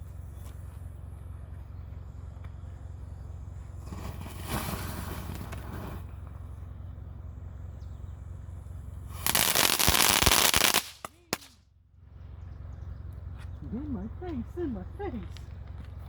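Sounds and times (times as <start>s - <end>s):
fireworks crackling: 3.7s - 6.6s, 9.0s - 11.6s.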